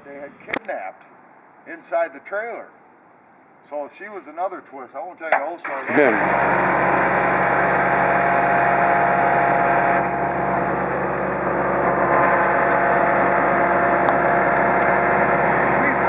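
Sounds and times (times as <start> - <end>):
engine running steadily: 5.7 - 16.0.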